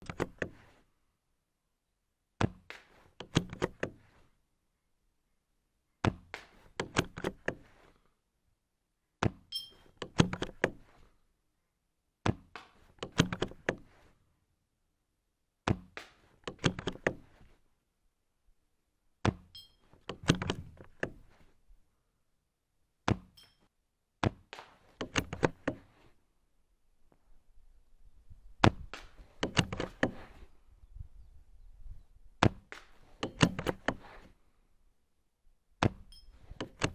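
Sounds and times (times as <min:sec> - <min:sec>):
airsoft rifle clicks and knocks: 0:02.4 - 0:04.2, 0:06.0 - 0:07.9, 0:09.2 - 0:11.1, 0:12.3 - 0:14.1, 0:15.7 - 0:17.6, 0:19.2 - 0:21.5, 0:24.2 - 0:26.1, 0:28.6 - 0:30.5, 0:32.4 - 0:34.4, 0:35.8 - 0:36.9.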